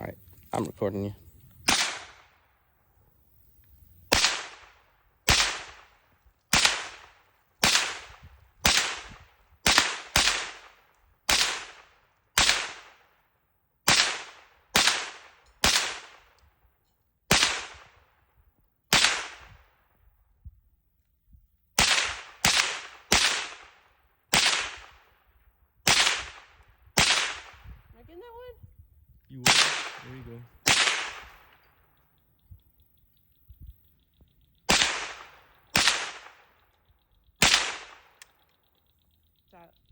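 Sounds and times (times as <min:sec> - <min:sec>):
rifle shots with echo: 0:01.7 - 0:02.4, 0:04.1 - 0:13.2, 0:13.9 - 0:16.4, 0:17.3 - 0:18.1, 0:18.9 - 0:19.7, 0:21.8 - 0:25.2, 0:25.8 - 0:27.8, 0:29.4 - 0:31.7, 0:34.6 - 0:36.6, 0:37.4 - 0:38.4.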